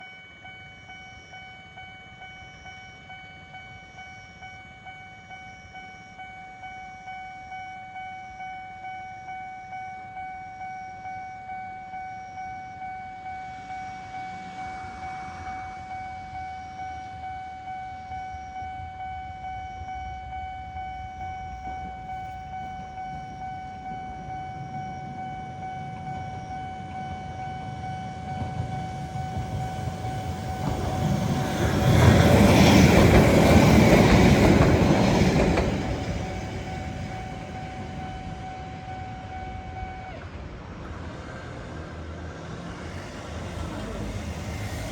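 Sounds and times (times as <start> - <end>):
railway crossing bell ringing: 0.0 - 40.4
train rumble: 11.4 - 44.9.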